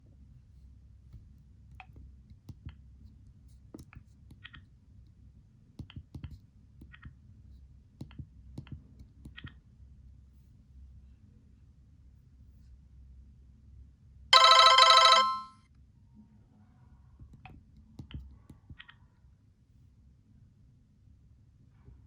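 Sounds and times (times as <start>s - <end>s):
short high beeps: 14.4s - 15.5s.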